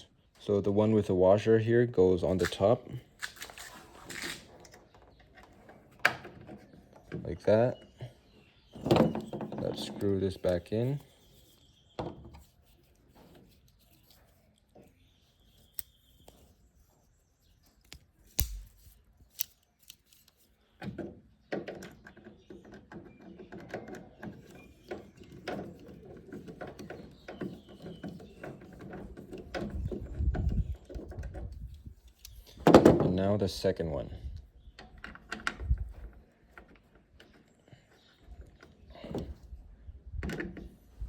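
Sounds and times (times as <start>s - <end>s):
screwdriver clicking and scraping: 17.8s - 20.5s.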